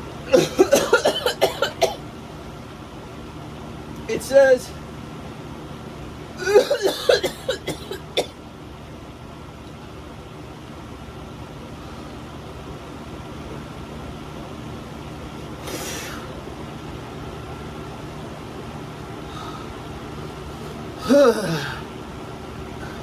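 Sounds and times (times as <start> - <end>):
steady low hum: 0.0 - 23.0
person coughing: 0.3 - 2.0, 6.4 - 8.4, 21.0 - 21.8.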